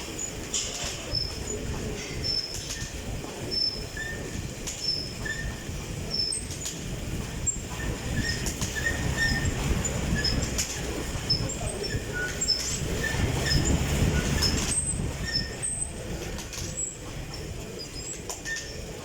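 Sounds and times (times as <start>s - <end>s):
exercise bike fan whoosh: 0.0s - 19.0s.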